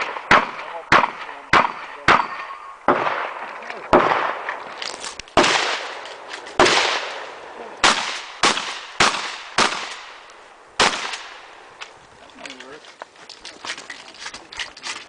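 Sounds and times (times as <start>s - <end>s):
shotgun shots: 0.0s - 11.6s.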